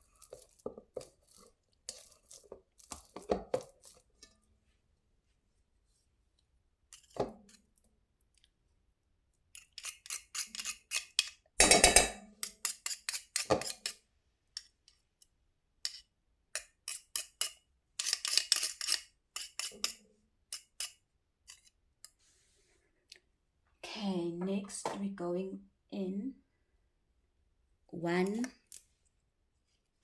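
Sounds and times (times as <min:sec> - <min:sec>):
utensil mashing banana in bowl: 0:00.0 - 0:04.5, 0:09.5 - 0:14.0, 0:15.9 - 0:22.2.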